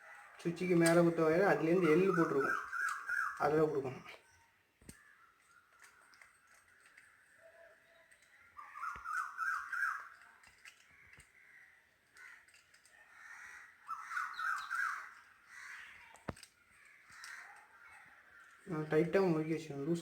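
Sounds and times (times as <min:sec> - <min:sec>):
crow cawing: 0:01.5 - 0:04.0, 0:08.4 - 0:18.7.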